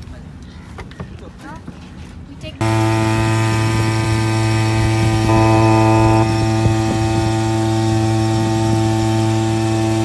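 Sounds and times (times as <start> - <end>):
loud steady low hum: 2.6 - 10.0.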